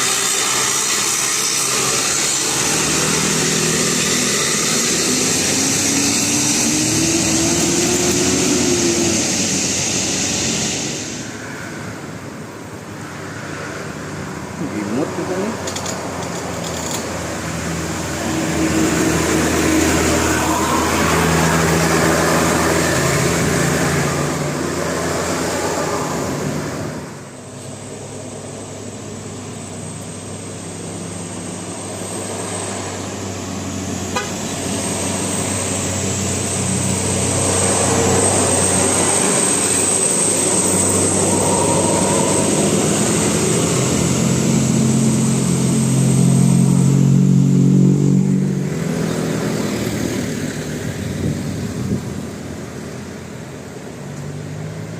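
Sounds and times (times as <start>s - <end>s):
engine noise: 0.0s - 54.9s
street traffic noise: 0.0s - 54.9s
musical vehicle horn: 34.1s - 34.6s.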